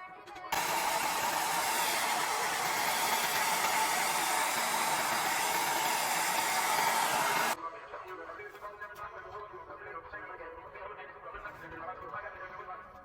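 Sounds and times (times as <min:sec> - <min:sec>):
hair dryer blowing with faint whine: 0:00.5 - 0:07.6.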